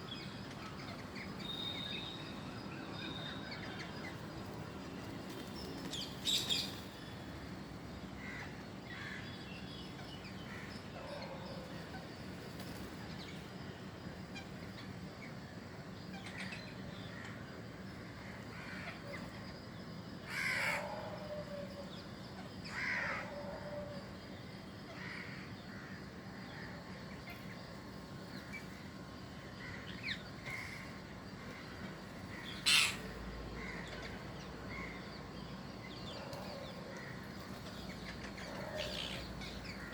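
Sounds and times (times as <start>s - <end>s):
harsh bird calls: 24.8s - 39.9s.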